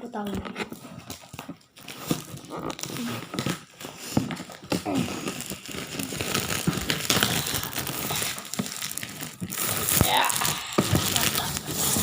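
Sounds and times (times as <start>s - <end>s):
plastic shrink-wrap crinkling: 0.0s - 12.0s.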